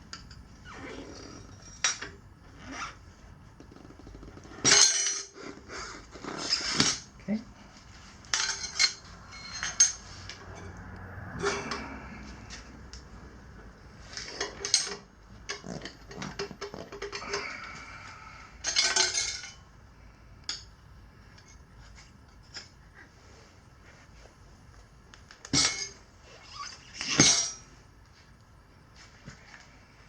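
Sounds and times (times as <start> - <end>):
tire levers clinking on a rim: 0.1 - 3.0, 3.6 - 5.4, 8.2 - 13.1, 14.0 - 17.9, 18.6 - 19.7, 25.4 - 27.7.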